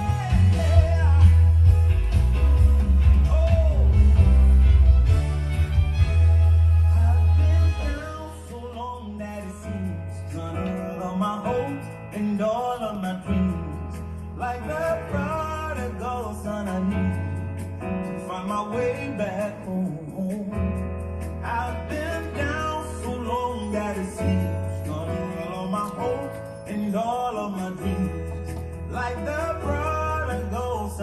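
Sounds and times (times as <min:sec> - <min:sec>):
gospel backing track: 0:00.0 - 0:31.0.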